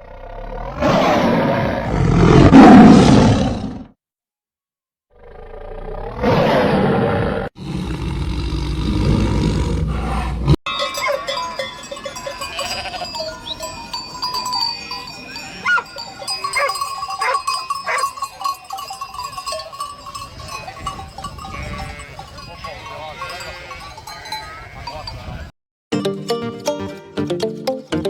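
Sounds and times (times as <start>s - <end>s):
deep animal roar: 0.0s - 3.9s, 5.1s - 10.6s
bells clanking: 10.7s - 25.4s
livestock bleating: 12.4s - 13.6s, 21.5s - 24.9s.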